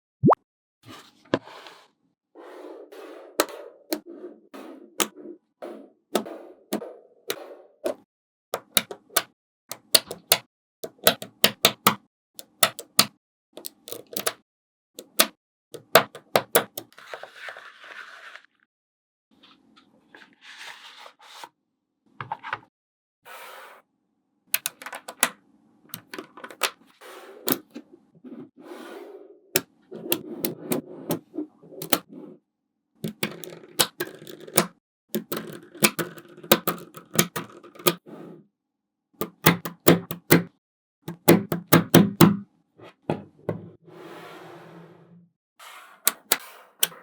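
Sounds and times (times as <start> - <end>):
magnetic balls clicking together: 33.0 - 38.0.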